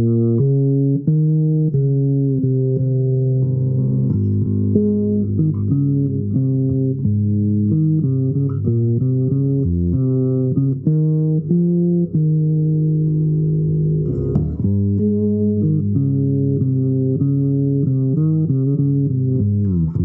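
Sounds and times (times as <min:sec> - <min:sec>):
low plucked string melody: 0:00.0 - 0:20.0.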